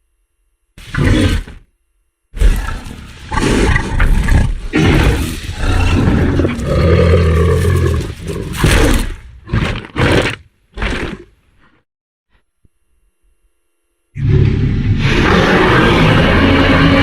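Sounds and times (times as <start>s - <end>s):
long deep dinosaur roar: 2.4s - 8.5s, 14.2s - 17.0s
dinosaur growl: 2.4s - 11.3s, 14.2s - 17.0s.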